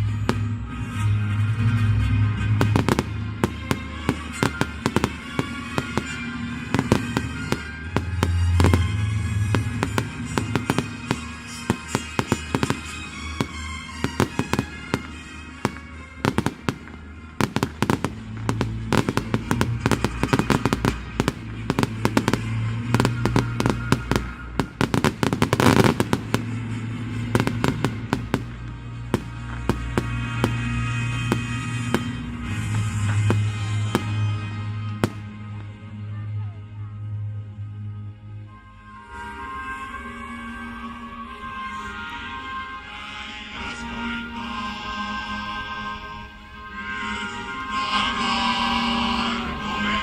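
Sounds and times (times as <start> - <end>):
fireworks bangs and crackles: 0.0 - 35.8
music with steady bass: 0.0 - 39.0.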